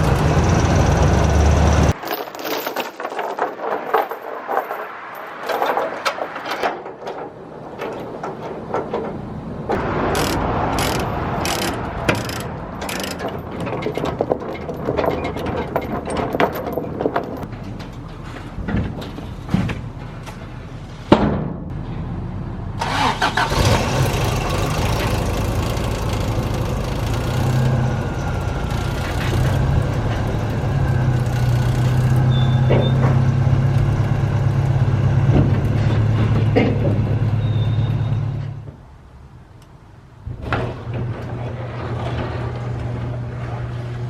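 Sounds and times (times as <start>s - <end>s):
four-cylinder engine running: 0.0s - 2.0s, 22.8s - 37.4s.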